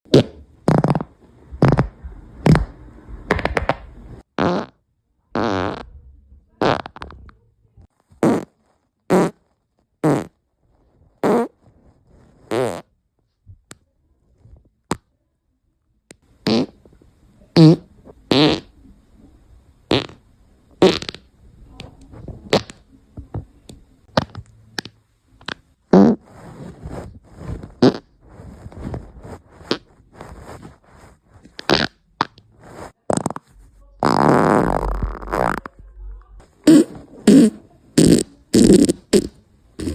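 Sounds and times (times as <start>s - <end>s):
person farting: 0.1s - 2.7s, 3.3s - 4.8s, 5.4s - 5.9s, 6.6s - 7.2s, 8.2s - 10.4s, 11.2s - 11.6s, 12.4s - 12.9s, 16.4s - 16.8s, 17.6s - 18.7s, 19.9s - 20.2s, 20.8s - 21.3s, 22.5s - 22.8s, 24.1s - 30.7s, 31.6s - 35.8s, 36.6s - 39.9s.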